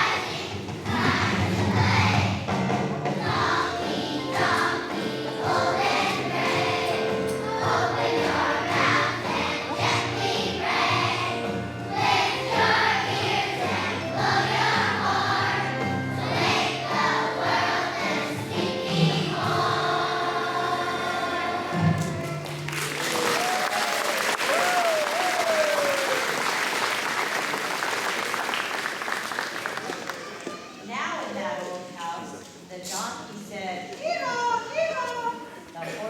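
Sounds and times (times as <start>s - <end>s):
children's choir singing: 0.0s - 23.2s
musical accompaniment: 0.0s - 27.6s.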